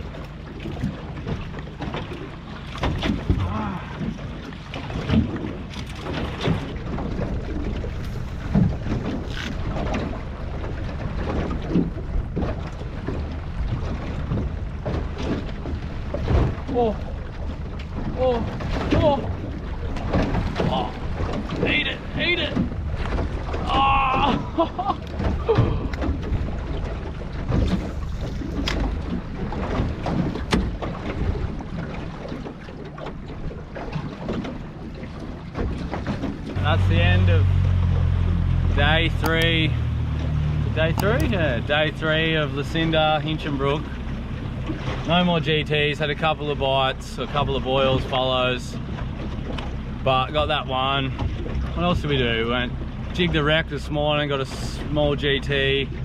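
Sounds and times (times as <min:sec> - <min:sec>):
water lapping around boat: 0:00.0 - 0:56.0
low rumble: 0:36.4 - 0:56.0.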